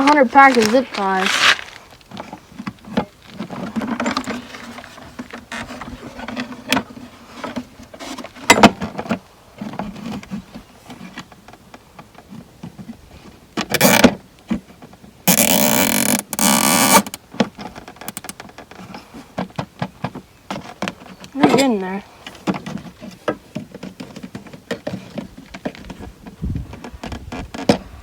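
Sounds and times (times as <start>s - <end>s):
clicks and rustling: 0.0s - 12.9s
zip tie ratcheting: 13.8s - 14.0s, 15.3s - 17.2s.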